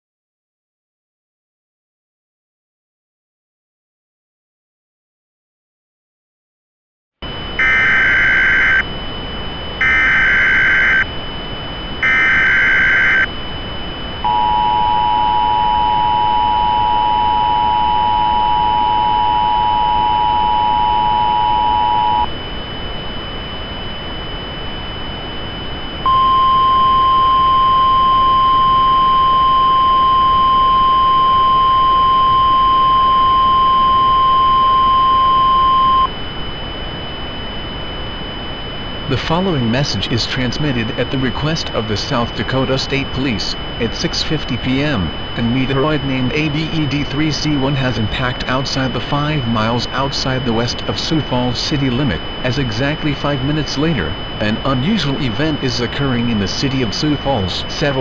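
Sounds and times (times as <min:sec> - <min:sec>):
two-tone attention signal: 0:07.2 - 0:08.8, 0:09.8 - 0:11.1, 0:12.0 - 0:13.3, 0:14.2 - 0:22.3, 0:26.0 - 0:36.2
single steady tone: 0:07.2 - 0:58.0
static hiss: 0:07.5 - 0:11.2, 0:11.9 - 0:13.3
digital data bursts: 0:07.6 - 0:08.8, 0:09.8 - 0:11.1, 0:12.0 - 0:13.3, 0:39.1 - 0:58.0.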